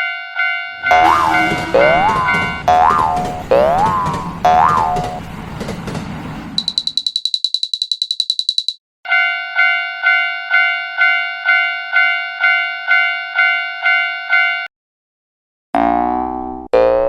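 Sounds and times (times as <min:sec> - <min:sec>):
crossing bell clanging: 0:00.0 - 0:05.7, 0:06.6 - 0:14.7
rapid high-pitched bell ringing: 0:06.6 - 0:09.8.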